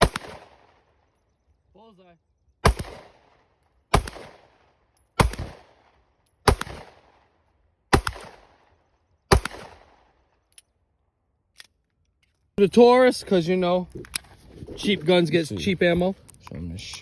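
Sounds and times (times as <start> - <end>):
pistol shots with echo: 0.0 - 0.9, 2.6 - 10.4.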